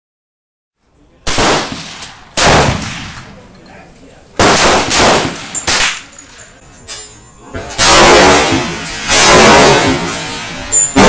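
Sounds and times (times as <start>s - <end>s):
rifle shots echoing: 1.3s - 3.4s, 4.4s - 6.1s, 7.8s - 11.0s.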